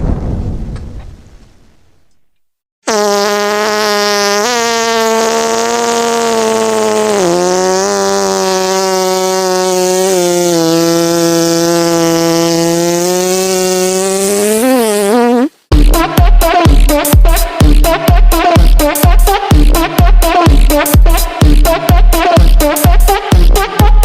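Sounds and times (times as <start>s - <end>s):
long fart sound effect: 2.8s - 24.0s.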